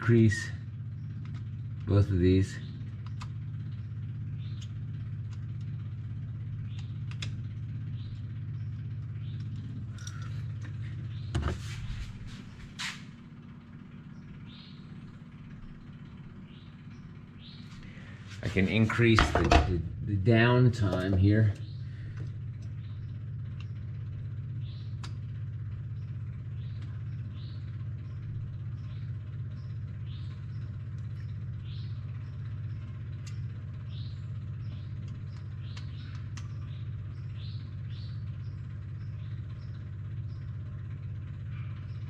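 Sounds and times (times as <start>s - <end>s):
birds chirping: 0.0s - 42.0s
steady low hum: 0.0s - 42.0s
light ticks: 35.0s - 36.6s.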